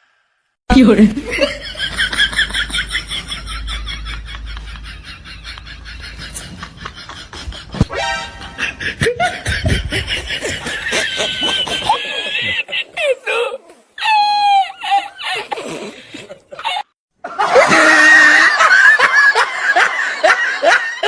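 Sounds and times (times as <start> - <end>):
laughter in quick pulses: 1.4 - 12.7
sudden sharp sound: 7.8 - 8.9
music: 7.9 - 8.8.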